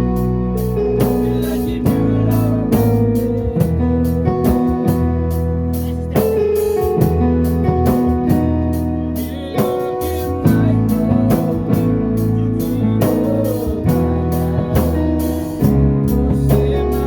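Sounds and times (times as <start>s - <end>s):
drum kit steady beat: 0.0s - 17.0s
guitar: 0.0s - 17.0s
keyboard chords: 0.0s - 17.0s.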